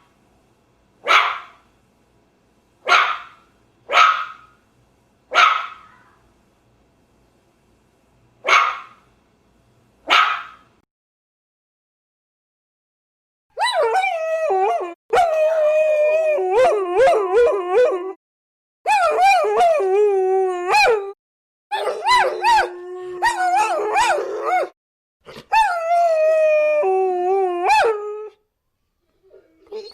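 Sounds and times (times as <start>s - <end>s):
dogs howling and whining: 13.6s - 18.2s, 18.9s - 24.8s, 25.5s - 28.4s.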